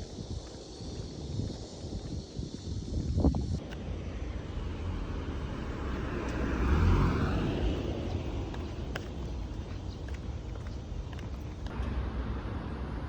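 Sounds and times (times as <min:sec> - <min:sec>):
vehicle passing: 0:04.4 - 0:13.0.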